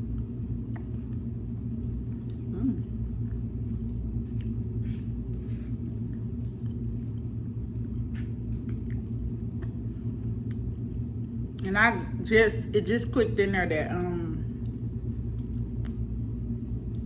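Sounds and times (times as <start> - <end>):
low hum: 0.0 - 17.0
wet chewing: 0.1 - 1.3, 2.0 - 11.7.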